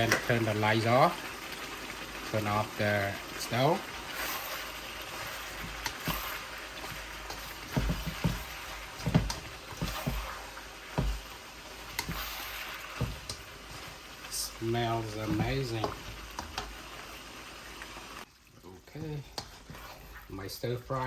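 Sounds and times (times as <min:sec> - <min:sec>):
food sizzling in a pan: 0:00.0 - 0:21.0.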